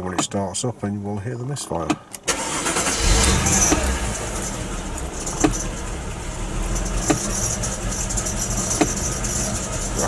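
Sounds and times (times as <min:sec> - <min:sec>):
car engine idling roughly: 0:02.5 - 0:10.0.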